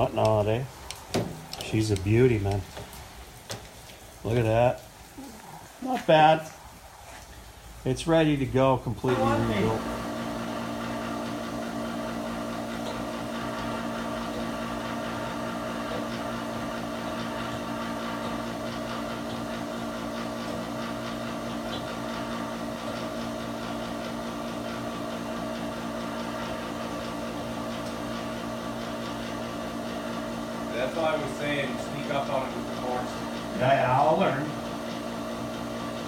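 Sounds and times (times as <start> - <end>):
surface grinder humming: 9.1 - 36.0.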